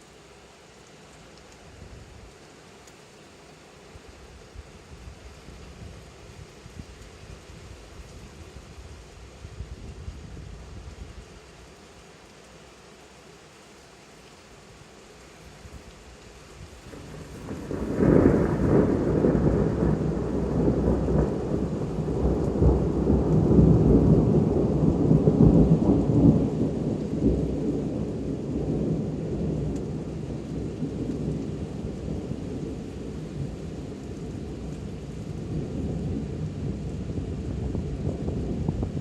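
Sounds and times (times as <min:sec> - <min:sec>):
steady rain: 0:00.0 - 0:39.0
thunder rolling: 0:16.9 - 0:39.0.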